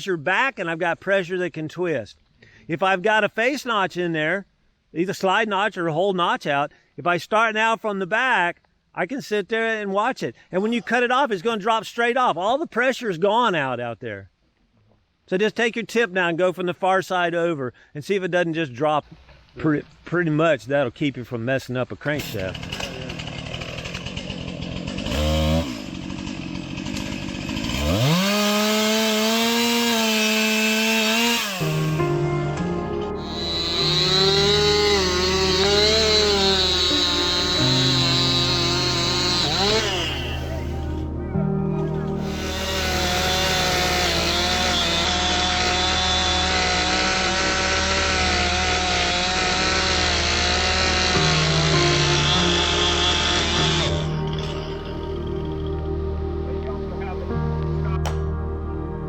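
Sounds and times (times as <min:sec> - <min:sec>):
chainsaw idling and revving: 0:22.2 - 0:32.2, 0:33.0 - 0:41.1, 0:42.2 - 0:55.7
chainsaw sawing into log: 0:22.2 - 0:32.2, 0:33.0 - 0:41.0, 0:42.2 - 0:55.4.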